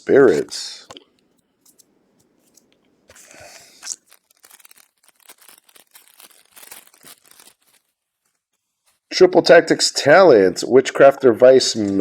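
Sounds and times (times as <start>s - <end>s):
wrapper and cards crinkling: 0.1s - 9.2s
foil wrapper tearing: 2.5s - 9.0s.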